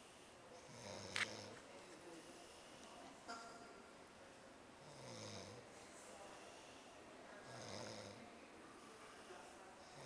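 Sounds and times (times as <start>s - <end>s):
man snoring: 7.5s - 8.2s.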